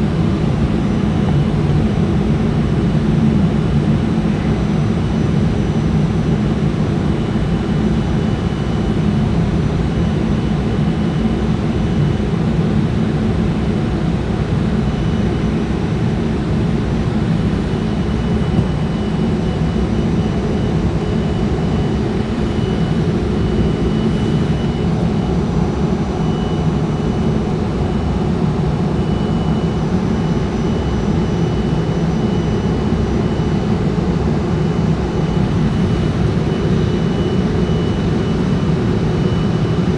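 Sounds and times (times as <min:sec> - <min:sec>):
jet engine cabin rumble: 0:00.0 - 0:39.9.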